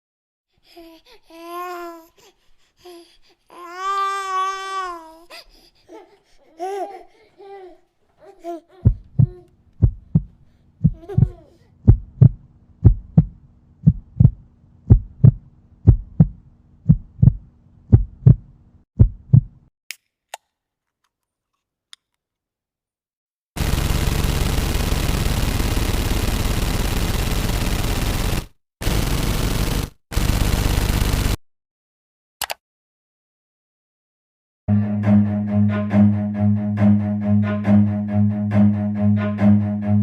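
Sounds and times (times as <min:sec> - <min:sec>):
baby babbling and giggling: 0:00.7 - 0:09.5, 0:10.9 - 0:11.8
heartbeat thumps: 0:08.8 - 0:19.6.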